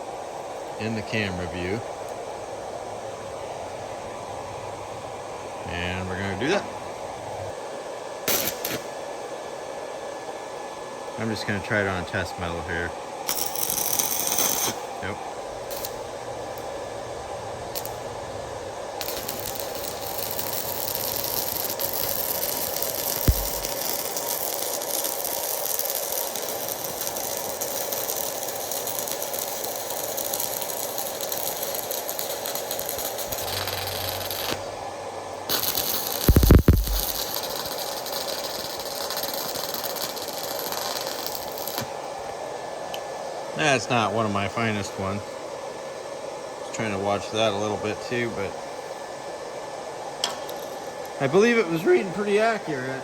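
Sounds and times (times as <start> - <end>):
welding arc crackling hiss: 0.0 - 53.0
low thumps: 23.3 - 23.6.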